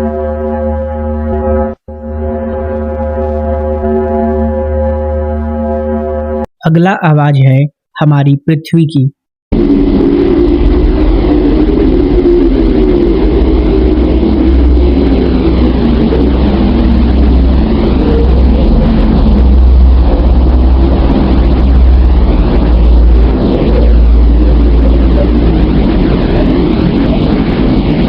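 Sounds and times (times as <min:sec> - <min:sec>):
faint rising and falling sweeps: 0:09.5 - 0:28.0
low rumble: 0:09.5 - 0:28.0.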